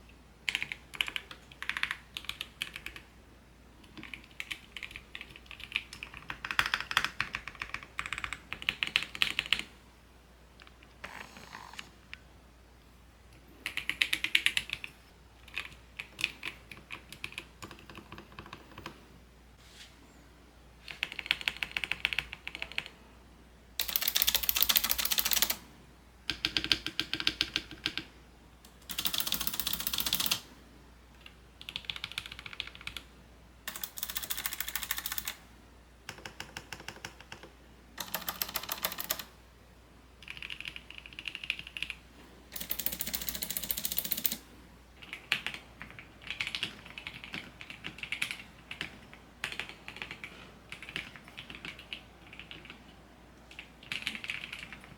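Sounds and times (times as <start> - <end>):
typing on computer keyboard: 0.5 - 3.0, 3.8 - 9.7, 13.6 - 19.0, 20.9 - 22.9, 23.8 - 25.6, 26.3 - 28.1, 28.8 - 30.5, 31.2 - 33.1, 33.7 - 35.4, 36.1 - 39.3, 40.2 - 44.4, 45.0 - 54.9.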